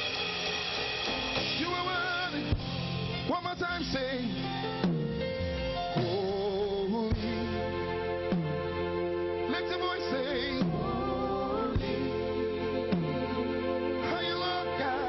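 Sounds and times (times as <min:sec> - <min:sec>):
drum hits: 0:00.0 - 0:06.5, 0:08.3 - 0:08.9
person singing with vibrato: 0:09.5 - 0:15.0.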